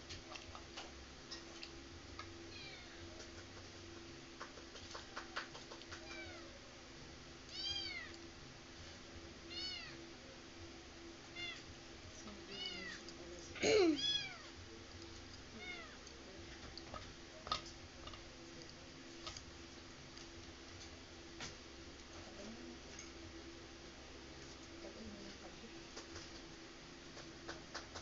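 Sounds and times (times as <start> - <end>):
cat meowing: 2.5 - 3.0, 6.0 - 6.5, 7.5 - 8.2, 9.5 - 10.0, 12.5 - 13.0, 14.0 - 14.5.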